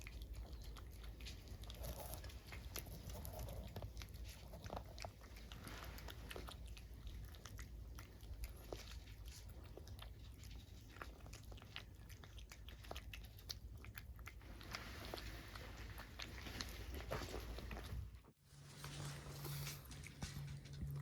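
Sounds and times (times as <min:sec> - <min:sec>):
cat chewing and crunching food: 0:00.0 - 0:21.0
low hum: 0:17.6 - 0:21.0.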